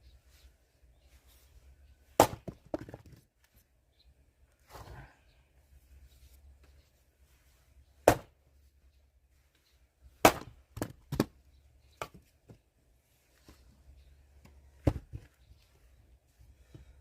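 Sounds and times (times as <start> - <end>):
axe striking logs: 2.2 - 3.2, 8.0 - 8.4, 10.2 - 11.3, 14.8 - 15.2.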